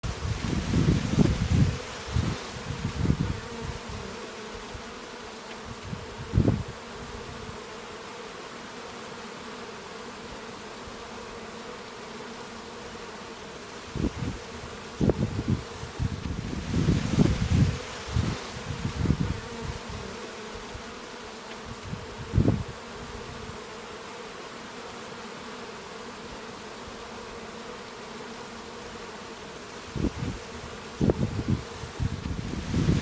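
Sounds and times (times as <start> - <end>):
wind buffeting microphone: 0.0 - 4.1, 5.6 - 7.5, 13.9 - 20.0, 21.7 - 23.6, 29.9 - 33.0
honeybees buzzing: 0.0 - 33.0.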